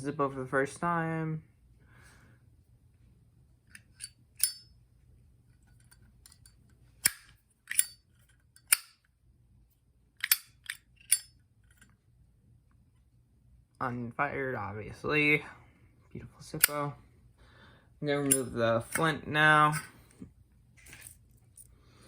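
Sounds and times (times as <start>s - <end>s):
lighter lid clicking open and shut: 8.6s - 8.9s.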